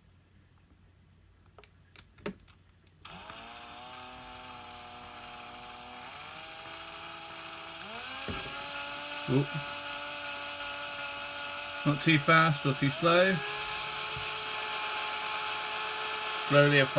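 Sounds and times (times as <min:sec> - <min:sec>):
electric drill whining: 0:02.5 - 0:16.9.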